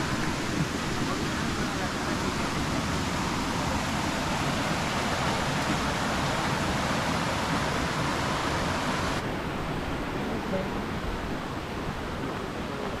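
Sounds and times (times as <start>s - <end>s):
waterfall rushing over rock: 0.0s - 13.0s.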